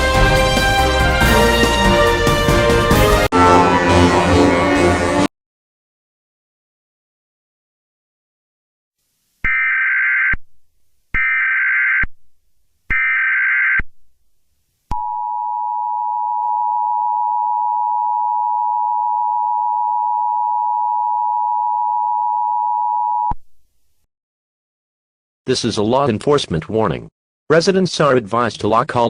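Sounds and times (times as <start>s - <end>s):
steady two-tone attention signal: 3.3s - 5.3s.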